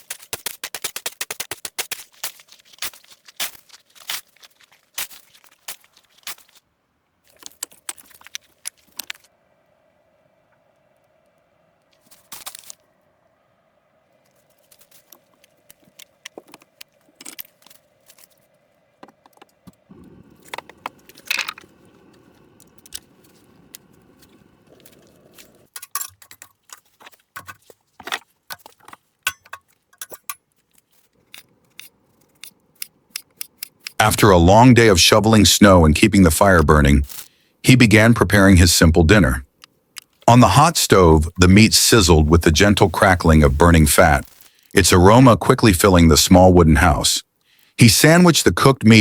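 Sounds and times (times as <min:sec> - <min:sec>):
small hard objects clinking: 0:00.0 - 0:06.6, 0:07.2 - 0:09.3, 0:11.9 - 0:12.8, 0:14.3 - 0:34.0, 0:41.3 - 0:44.8
faint steady hum: 0:05.9 - 0:25.8, 0:30.9 - 0:49.0.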